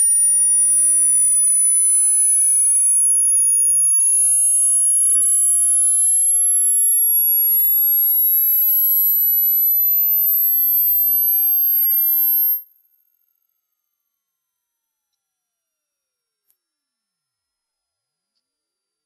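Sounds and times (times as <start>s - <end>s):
high-pitched rising sine tone: 0.0s - 12.7s.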